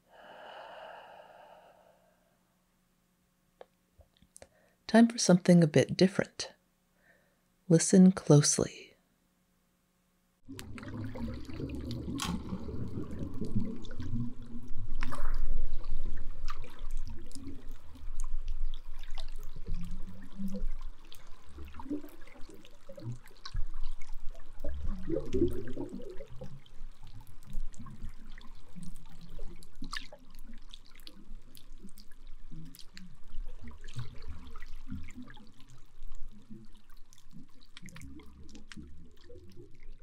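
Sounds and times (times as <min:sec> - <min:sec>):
underwater water surge: 0:10.5 - 0:23.7, 0:24.4 - 0:30.1.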